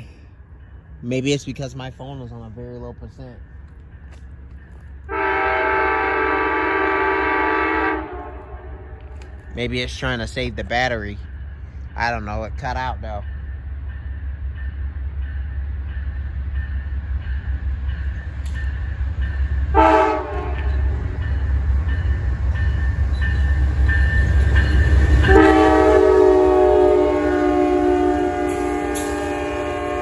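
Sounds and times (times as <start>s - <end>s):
diesel locomotives rumbling: 0.0s - 30.0s
train horn blasts: 5.1s - 9.1s, 19.7s - 21.2s, 25.1s - 30.0s.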